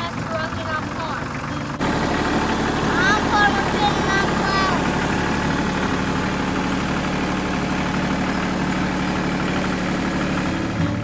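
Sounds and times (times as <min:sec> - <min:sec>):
tractor engine running: 0:00.0 - 0:11.0.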